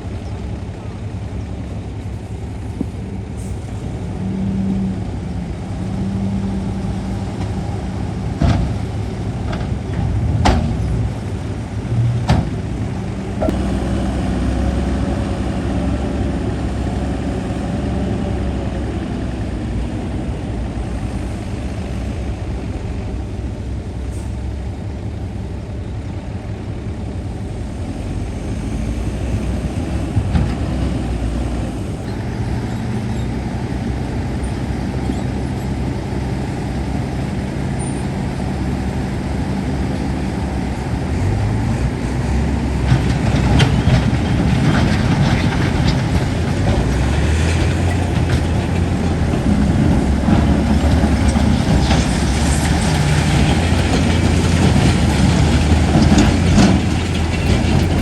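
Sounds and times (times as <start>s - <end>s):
heavy diesel machine engine: 0.0s - 58.0s
metallic clanks and rattles: 42.9s - 58.0s.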